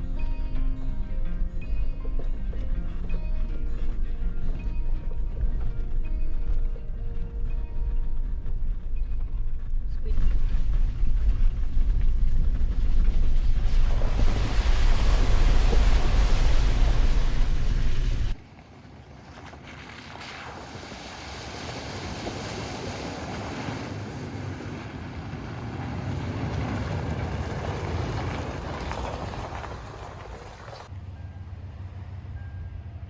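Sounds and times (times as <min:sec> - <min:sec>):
car driving on dirt road: 0:00.0 - 0:33.0
steady rushing noise: 0:07.4 - 0:18.4.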